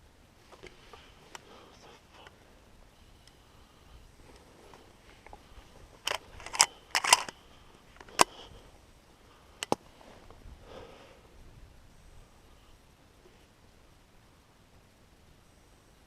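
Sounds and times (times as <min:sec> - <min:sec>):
sharp mechanical clicks: 0:06.0 - 0:07.4.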